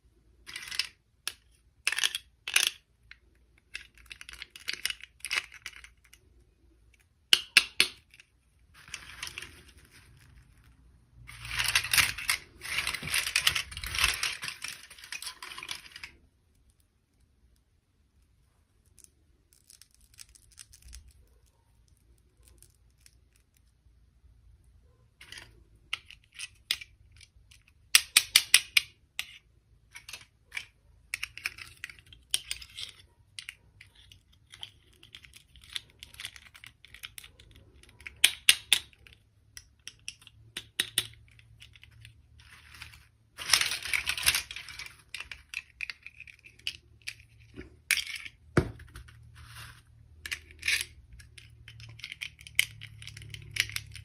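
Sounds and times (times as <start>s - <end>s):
plastic toy parts clicking: 0.4s - 23.8s, 25.2s - 54.0s
packaging rustling and tearing: 11.3s - 16.1s, 48.8s - 50.7s.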